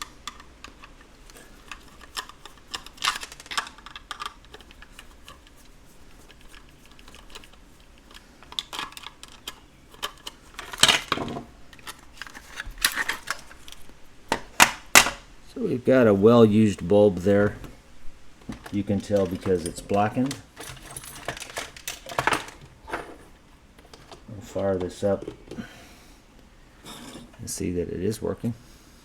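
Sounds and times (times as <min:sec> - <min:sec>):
clicks and clatter of small parts: 0:00.0 - 0:15.2, 0:18.4 - 0:25.7.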